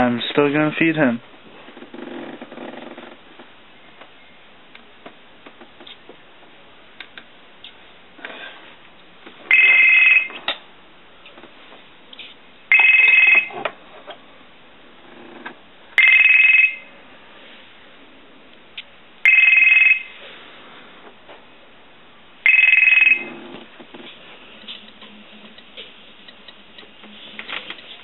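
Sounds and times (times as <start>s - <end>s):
electronic telephone ringing: 9.5s - 10.4s, 12.7s - 13.6s, 16.0s - 16.9s, 19.2s - 20.2s, 22.4s - 23.4s.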